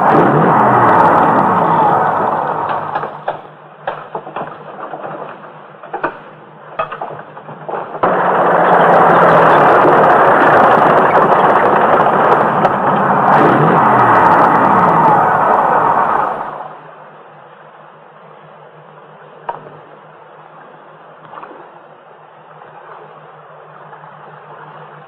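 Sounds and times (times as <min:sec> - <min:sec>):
loud steady rumbling: 0:00.0 - 0:25.0
sharp clicks and knocks: 0:02.6 - 0:08.2, 0:09.8 - 0:13.2.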